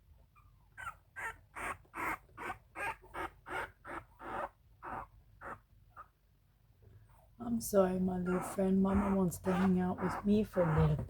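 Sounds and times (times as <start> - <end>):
puppy whimpering: 0.4 - 6.1, 8.2 - 11.0.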